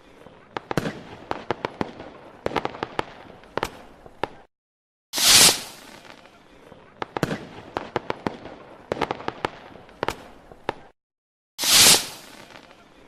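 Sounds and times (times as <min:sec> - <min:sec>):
fireworks cracking and popping: 0:00.0 - 0:04.5, 0:05.2 - 0:11.0, 0:11.6 - 0:13.0
loud firework burst: 0:05.2 - 0:06.2, 0:11.6 - 0:12.8.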